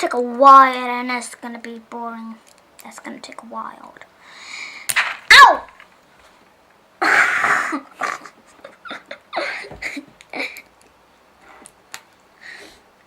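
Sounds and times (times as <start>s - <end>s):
person coughing: 7.0s - 10.6s.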